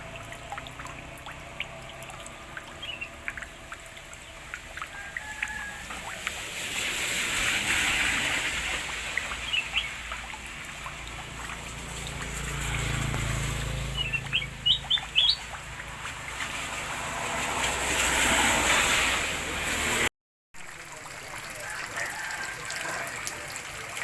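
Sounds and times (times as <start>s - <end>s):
water trickling and splashing: 0.0s - 24.0s
bird chirps: 2.7s - 3.4s, 9.4s - 10.0s, 13.8s - 15.6s.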